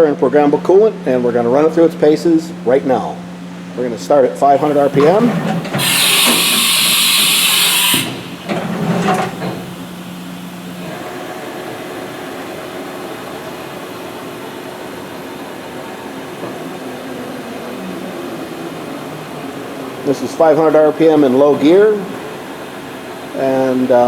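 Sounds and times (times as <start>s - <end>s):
milling machine spindle hum: 2.4s - 24.0s
machine clunks: 4.6s - 10.0s.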